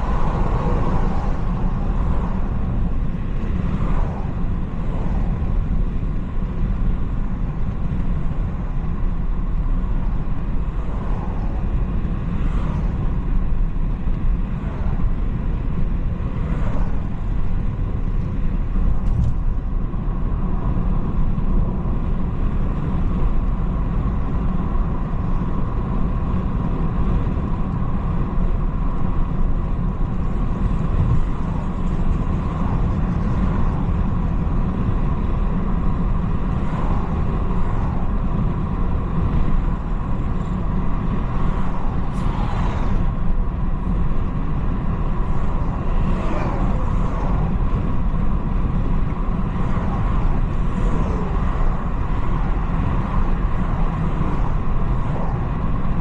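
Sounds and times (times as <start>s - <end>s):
car driving rumble: 0.0s - 56.0s.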